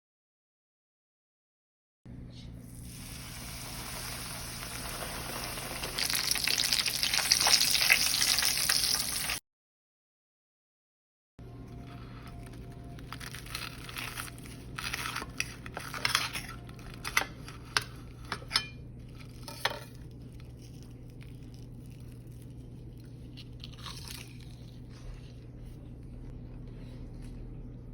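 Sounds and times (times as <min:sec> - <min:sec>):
crunching breaded steak: 0:03.6 - 0:09.4, 0:11.9 - 0:18.1, 0:19.0 - 0:25.6
steady low hum: 0:11.4 - 0:27.9.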